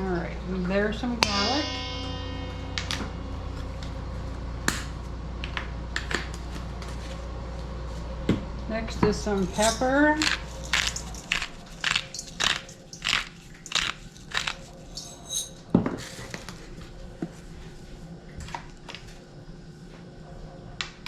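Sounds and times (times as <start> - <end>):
pepper mill grinding: 9.4 - 15.6.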